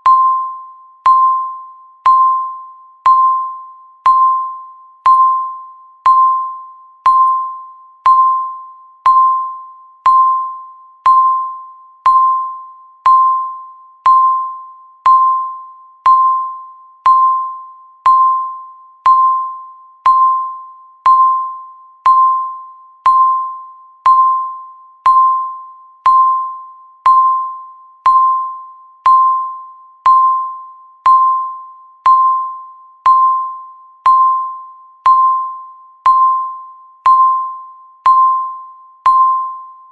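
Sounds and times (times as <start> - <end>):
bell-like timer beep: 0.0 - 39.9.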